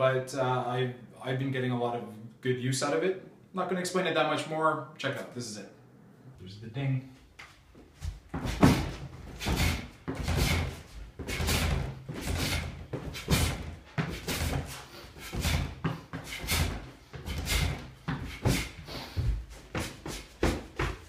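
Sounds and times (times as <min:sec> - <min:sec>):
movement on the floor: 0:07.2 - 0:21.0
punches thudding: 0:08.3 - 0:18.8.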